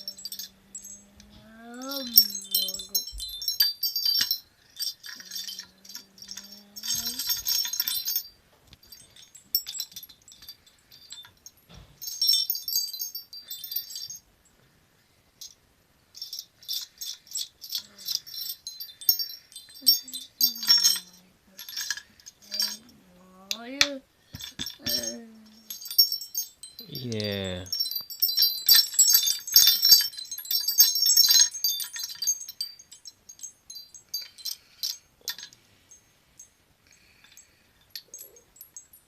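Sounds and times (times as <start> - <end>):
bar chimes jingling: 0.0 - 14.6, 15.4 - 39.0
child babbling: 1.1 - 3.0.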